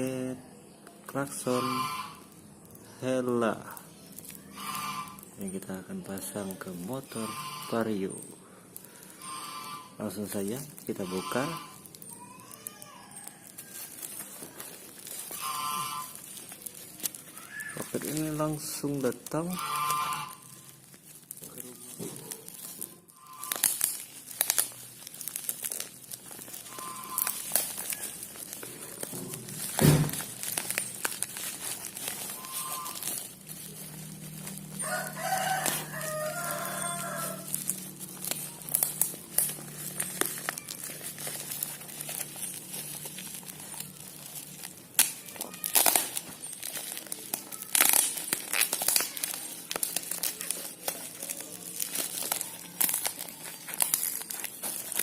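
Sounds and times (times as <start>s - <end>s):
plastic packaging crinkling: 0.0s - 55.0s
rooster crowing: 12.5s - 14.3s, 26.7s - 28.2s, 32.4s - 38.5s.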